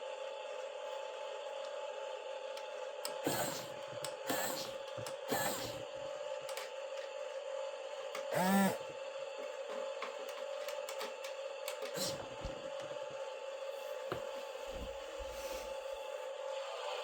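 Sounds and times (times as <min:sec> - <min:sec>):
toy gear motors whirring: 0:08.3 - 0:08.8, 0:11.8 - 0:12.3.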